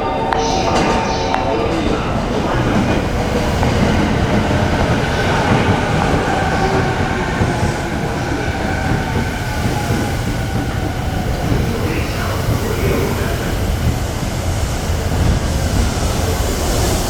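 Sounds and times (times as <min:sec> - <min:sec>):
faint high tone: 0:00.0 - 0:02.7
train rail rumble: 0:00.0 - 0:17.0.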